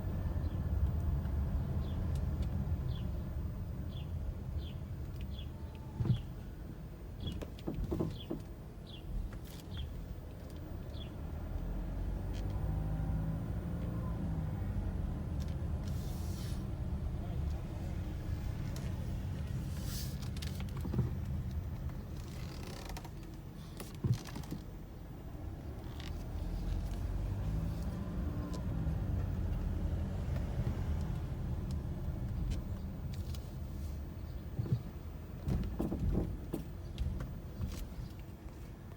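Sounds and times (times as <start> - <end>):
car road rumble: 0.0 - 38.9
vehicle running noise: 0.0 - 38.9
suspension clunks: 7.2 - 11.1, 15.3 - 33.6, 34.2 - 38.4.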